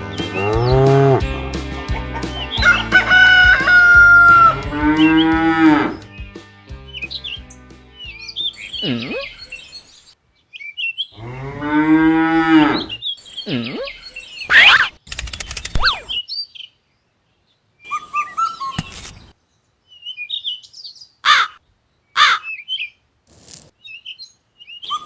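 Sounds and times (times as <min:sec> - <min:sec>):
bird chirps: 0:00.0 - 0:01.2, 0:05.9 - 0:11.2, 0:15.4 - 0:16.8, 0:19.5 - 0:21.2, 0:22.0 - 0:25.0
cows mooing: 0:00.2 - 0:01.5, 0:02.6 - 0:06.0, 0:11.2 - 0:13.0.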